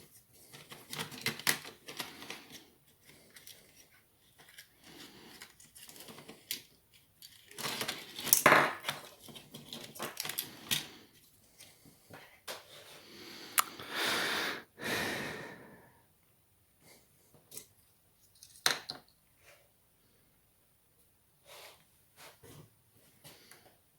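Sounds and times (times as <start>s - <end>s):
small parts clicking and rattling: 0.5s - 10.9s, 17.5s - 19.2s.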